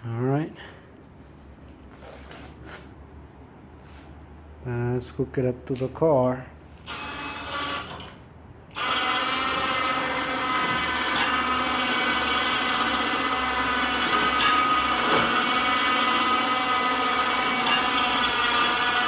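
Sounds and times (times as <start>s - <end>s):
electric winch motor whine: 6.8s - 19.0s.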